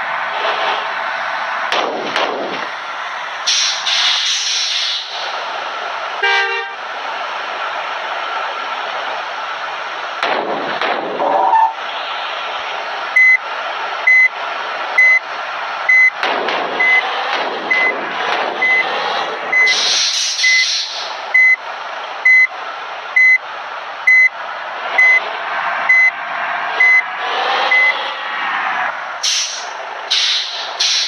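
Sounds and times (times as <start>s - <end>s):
bus engine running: 0.0s - 31.0s
air hiss: 3.5s - 5.2s, 19.7s - 21.1s, 29.2s - 31.0s
reversing alarm beeping: 11.4s - 11.8s, 13.2s - 13.4s, 14.0s - 14.4s, 15.0s - 15.3s, 15.9s - 16.2s, 16.8s - 18.0s, 18.6s - 21.6s, 22.2s - 22.5s, 23.2s - 23.4s, 24.0s - 24.4s, 25.0s - 25.2s, 25.9s - 26.2s, 26.8s - 27.1s, 27.7s - 28.0s.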